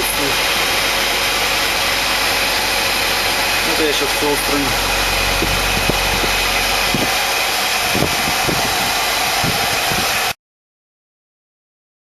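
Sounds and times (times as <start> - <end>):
lathe running: 0.3 - 9.5.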